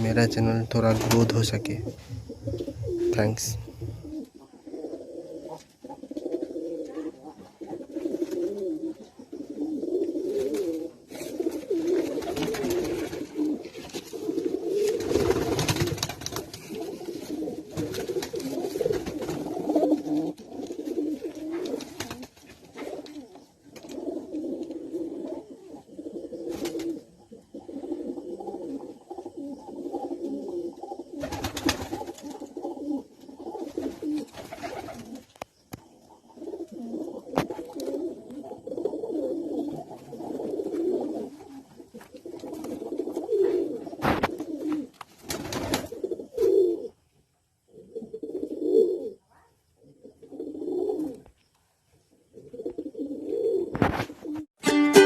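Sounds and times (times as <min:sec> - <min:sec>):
pigeons cooing: 0:00.0 - 0:47.0, 0:47.6 - 0:51.4, 0:52.2 - 0:54.5.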